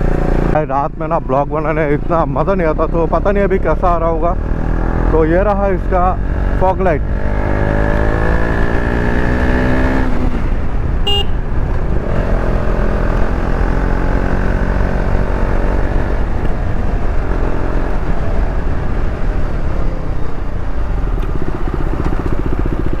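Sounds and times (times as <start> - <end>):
road and wind noise: 0.0 - 23.0
motorcycle engine running: 4.1 - 23.0
vehicle horn: 11.0 - 11.5
sharp beep: 11.1 - 11.4.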